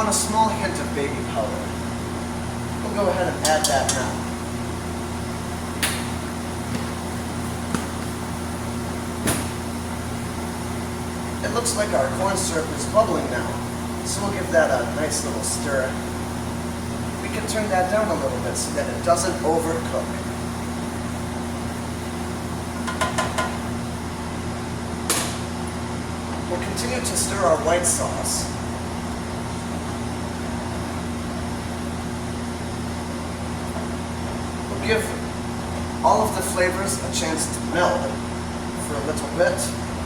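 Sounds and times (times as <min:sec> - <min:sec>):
low mechanical hum: 0:00.0 - 0:40.0.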